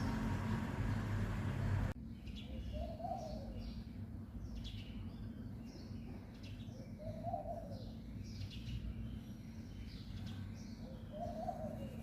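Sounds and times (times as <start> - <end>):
steady rumble: 0.0 - 2.0
birds chirping: 0.0 - 12.0.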